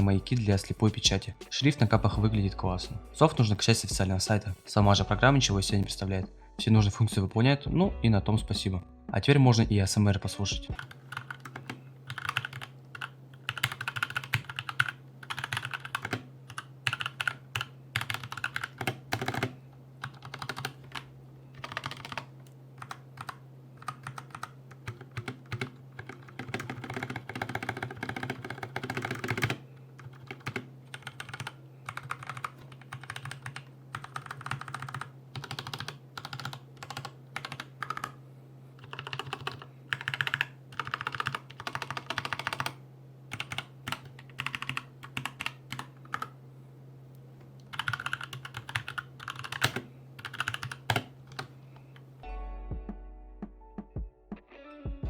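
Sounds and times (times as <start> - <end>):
steady low hum: 0.0 - 55.0
mechanical keyboard typing: 10.8 - 38.2, 38.8 - 46.4, 47.7 - 51.5.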